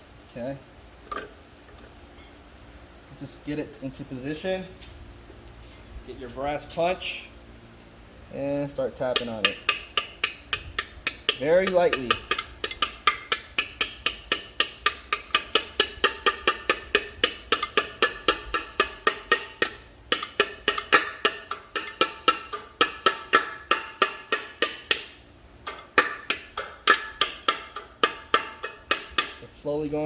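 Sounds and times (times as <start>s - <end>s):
hammer tapping metal punch: 9.0s - 29.6s.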